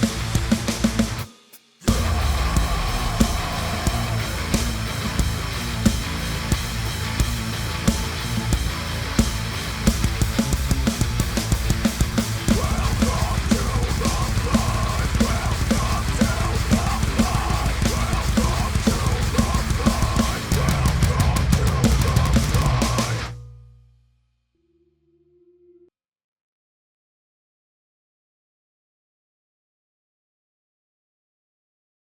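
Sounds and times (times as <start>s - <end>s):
heavy rock song: 0.0s - 23.3s
rapid cymbal and drum hits: 0.0s - 23.5s.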